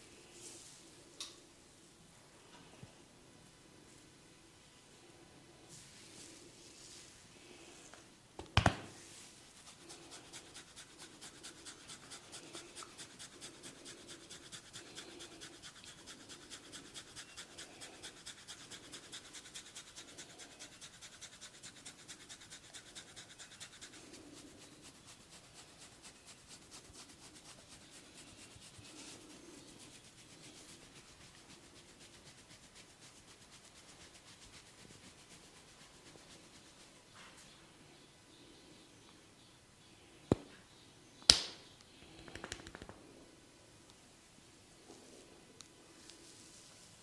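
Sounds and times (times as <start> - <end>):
fingers scratching through hair: 9.5 - 37.0.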